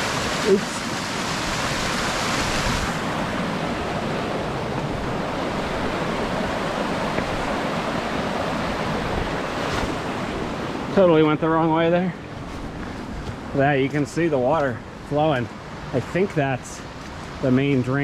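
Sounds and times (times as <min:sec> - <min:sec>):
wind buffeting microphone: 0:01.0 - 0:11.3.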